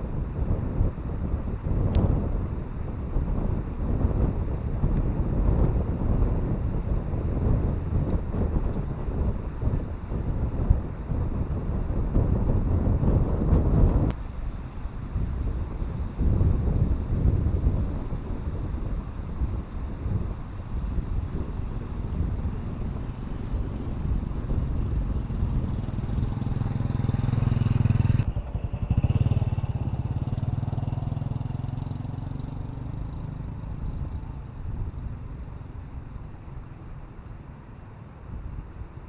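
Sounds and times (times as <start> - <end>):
motorcycle engine running: 15.1 - 37.6.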